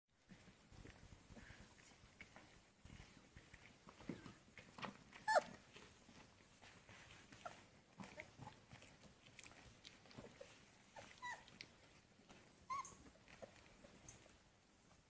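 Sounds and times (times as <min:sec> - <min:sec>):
puppies whimpering: 0:05.2 - 0:05.6, 0:10.2 - 0:11.6, 0:12.6 - 0:13.7.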